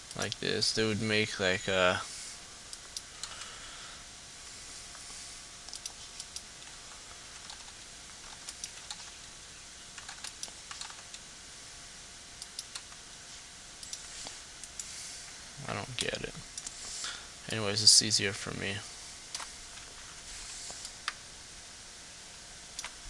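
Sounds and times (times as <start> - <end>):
background hiss: 0.0 - 23.0
keyboard and mouse clicks: 7.4 - 9.2, 10.0 - 11.2, 22.8 - 23.0.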